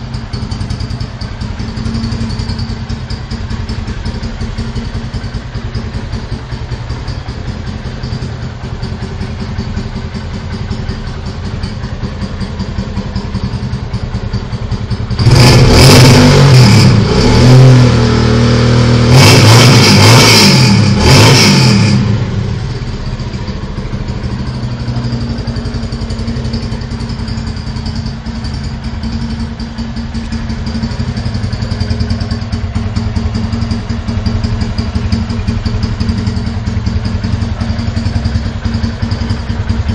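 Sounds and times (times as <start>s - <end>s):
loud exhaust engine revving: 15.1s - 22.8s.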